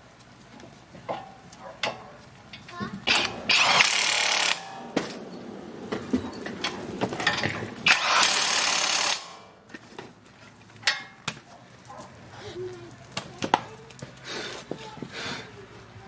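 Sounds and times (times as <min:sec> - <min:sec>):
impact wrench running: 0:03.1 - 0:05.0, 0:07.3 - 0:09.5.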